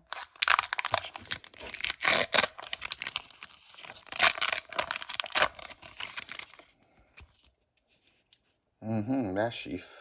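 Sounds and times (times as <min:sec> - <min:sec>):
foil wrapper tearing and crinkling: 0:00.0 - 0:06.6.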